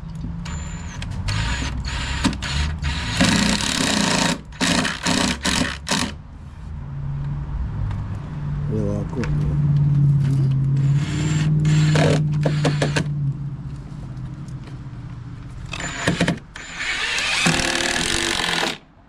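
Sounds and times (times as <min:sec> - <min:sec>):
power tool motor running: 0:00.5 - 0:06.2, 0:10.8 - 0:13.1, 0:15.7 - 0:18.8.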